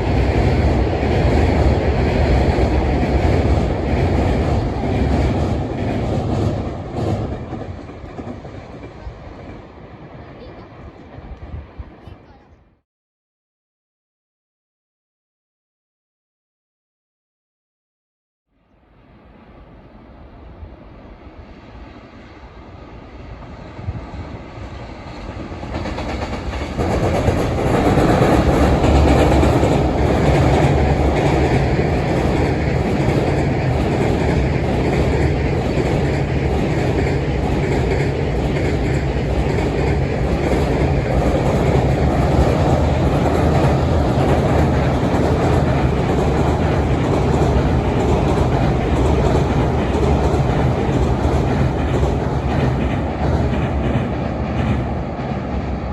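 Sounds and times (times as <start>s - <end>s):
freight train passing on rails: 0.0s - 12.8s, 18.7s - 55.9s.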